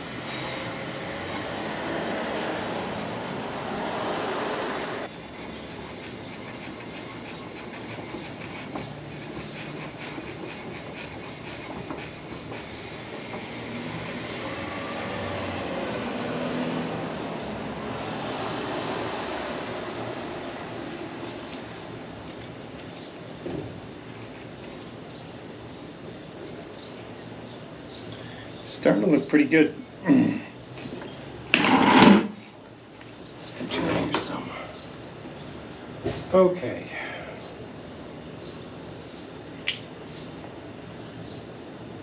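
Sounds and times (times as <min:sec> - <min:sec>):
sandpaper scraping metal: 0:00.2 - 0:04.2, 0:05.0 - 0:14.7.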